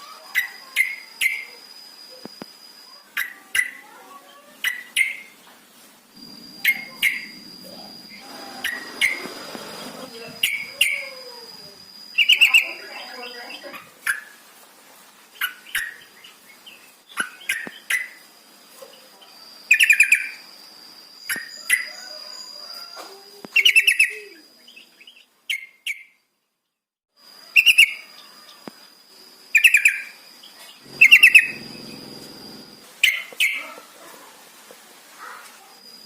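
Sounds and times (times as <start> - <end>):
thin high whine: 6.1 - 12.2, 30.8 - 33.0
bulbul bubbly calls: 30.9 - 32.8.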